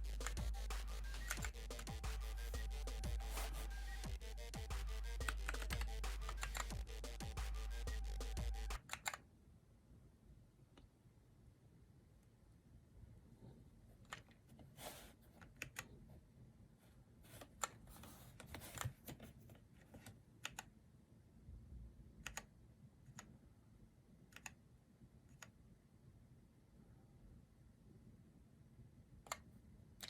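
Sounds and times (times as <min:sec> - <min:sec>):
mechanical keyboard clicks: 0:05.2 - 0:06.8, 0:08.8 - 0:09.2, 0:22.3 - 0:22.5.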